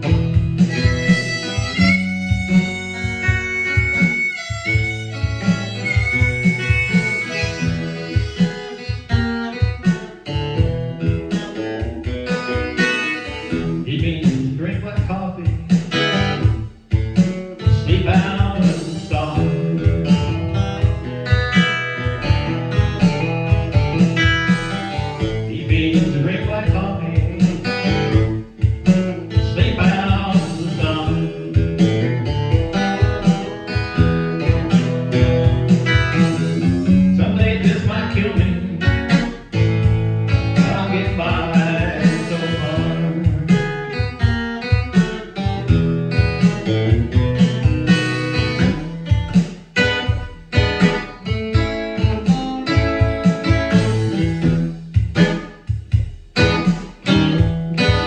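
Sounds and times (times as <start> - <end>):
acoustic guitar strumming: 0.0 - 58.0.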